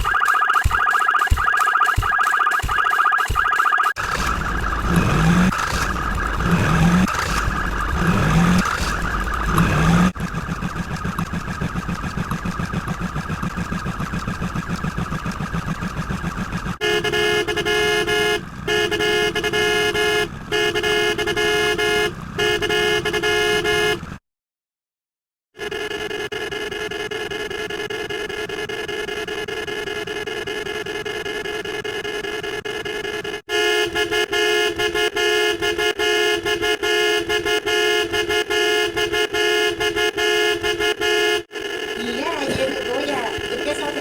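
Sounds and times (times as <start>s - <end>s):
steady fast pulsing: 0.0s - 16.8s, 41.6s - 44.0s
noisy rumble with low thumps: 4.0s - 16.8s
vehicle horn blasts: 16.8s - 24.1s, 32.0s - 44.0s.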